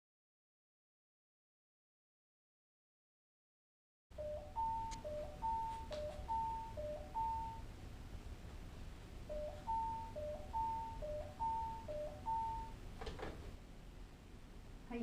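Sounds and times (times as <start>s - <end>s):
two-tone doorbell chime: 4.2s - 7.6s, 9.3s - 12.8s.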